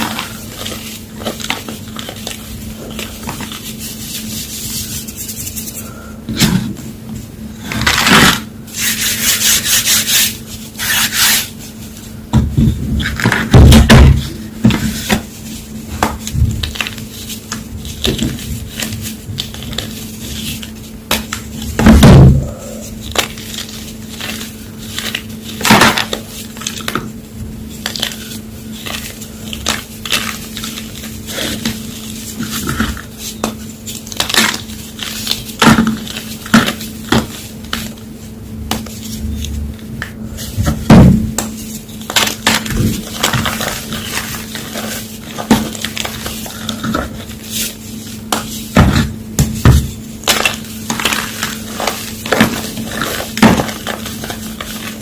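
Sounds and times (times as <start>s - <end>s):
chalk block being crushed: 7.6s - 11.6s, 23.1s - 27.1s, 27.8s - 38.0s, 40.6s - 55.0s.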